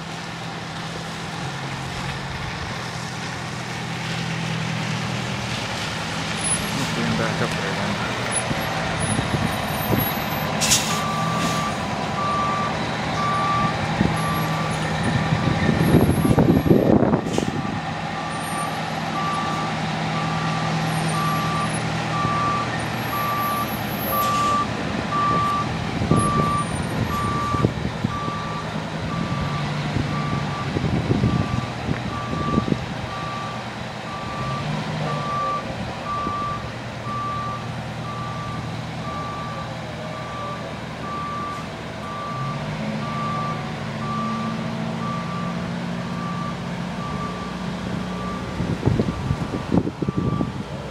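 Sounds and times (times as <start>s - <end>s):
truck engine running: 0.0s - 50.9s
reverse alarm beeping: 18.2s - 29.6s.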